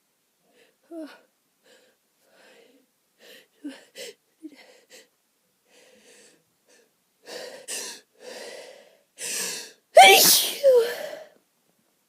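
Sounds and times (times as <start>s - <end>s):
person gasping in-breaths: 7.3s - 11.4s
person sneezing: 10.0s - 11.3s.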